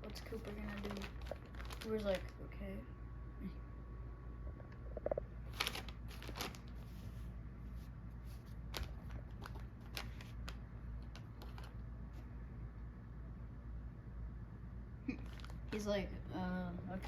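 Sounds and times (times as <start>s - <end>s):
paper packaging rustling: 0.0s - 2.4s, 5.5s - 11.8s, 15.2s - 16.0s
low steady hum: 0.0s - 17.0s.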